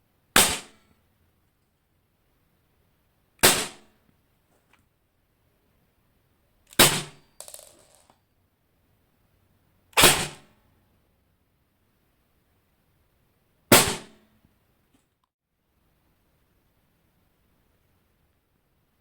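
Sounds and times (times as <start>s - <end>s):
airsoft gun shots into metal sheet: 0.4s - 0.8s, 3.4s - 3.9s, 6.7s - 7.7s, 10.0s - 10.5s, 13.7s - 14.2s
faint rattle: 7.4s - 8.1s.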